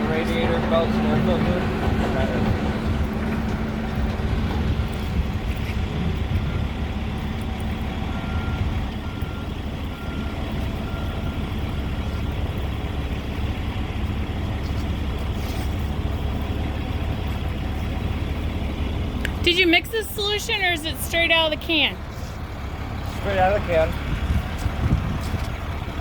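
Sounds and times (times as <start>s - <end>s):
heavy equipment engine rumble: 0.0s - 26.0s
backup alarm beeping: 6.3s - 12.5s, 19.4s - 22.1s.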